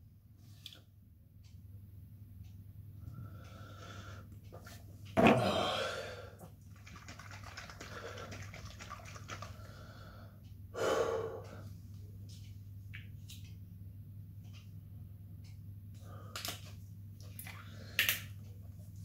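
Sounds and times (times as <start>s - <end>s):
man breathing hard: 5.4s - 6.4s, 9.6s - 11.8s.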